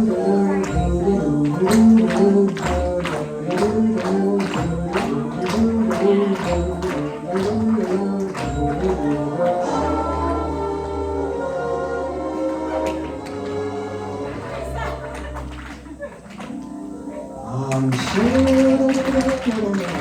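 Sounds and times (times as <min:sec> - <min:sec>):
steady tapping beat: 0:00.0 - 0:09.7, 0:17.6 - 0:20.0
instrumental melody: 0:00.0 - 0:19.6.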